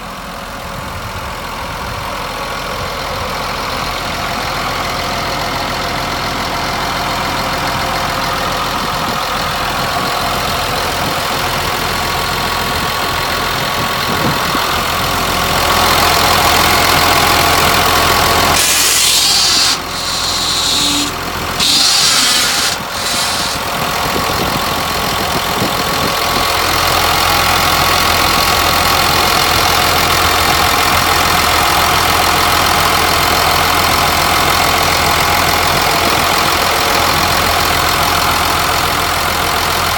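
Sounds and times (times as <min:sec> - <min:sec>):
dozer diesel engine running: 0:00.0 - 0:39.9
loud hiss: 0:18.5 - 0:24.0.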